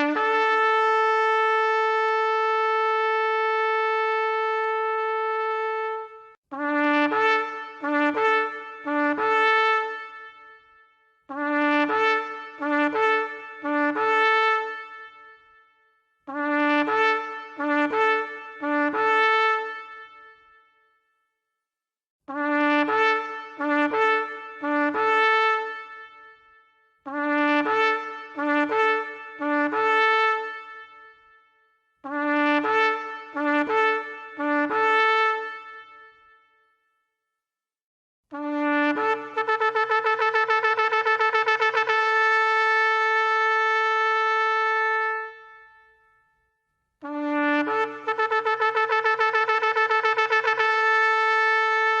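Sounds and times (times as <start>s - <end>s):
shofar blasts: 47.0s - 52.0s.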